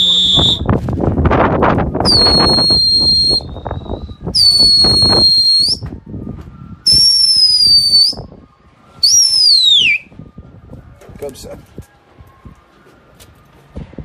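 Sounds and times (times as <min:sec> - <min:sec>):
long high whistles: 0:00.0 - 0:00.7, 0:02.0 - 0:06.0, 0:06.8 - 0:10.2.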